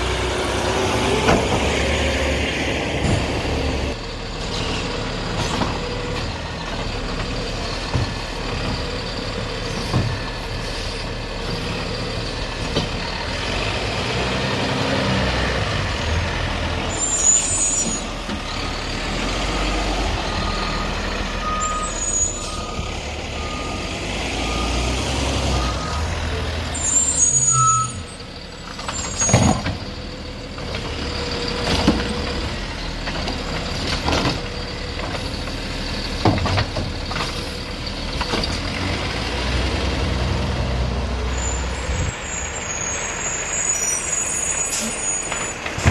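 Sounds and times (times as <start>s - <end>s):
garbage truck engine rumble: 0.0s - 45.9s
reversing beeps: 20.3s - 26.1s, 27.1s - 28.1s
air brake hisses: 44.4s - 45.3s.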